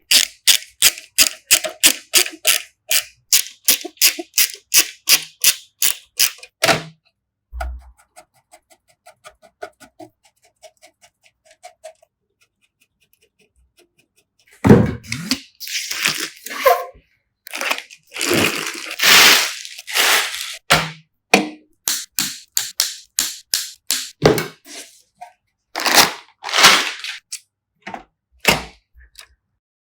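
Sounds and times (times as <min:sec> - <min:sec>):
computer parts clicking and knocking: 0:00.0 - 0:07.0, 0:21.8 - 0:24.6
small rapid ticks: 0:08.3 - 0:14.6.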